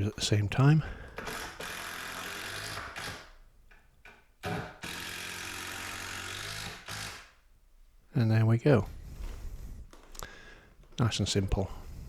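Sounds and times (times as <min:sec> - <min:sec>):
power drill driving screws: 0:01.2 - 0:03.4, 0:04.4 - 0:07.4.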